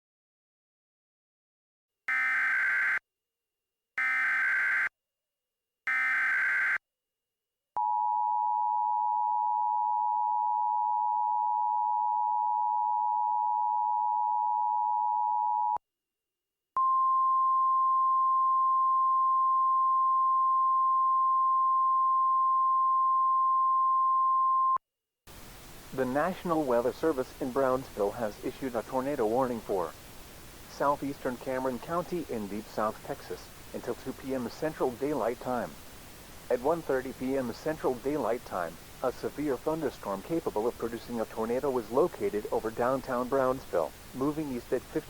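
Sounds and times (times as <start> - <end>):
steady warning alarm tone: 2.1 - 3.0, 4.0 - 4.9, 5.9 - 6.8.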